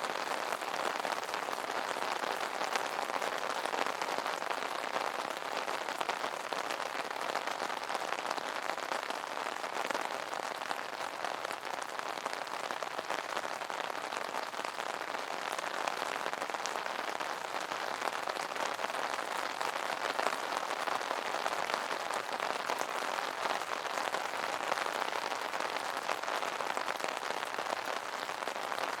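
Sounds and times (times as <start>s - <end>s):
rain on an umbrella: 0.0s - 29.0s.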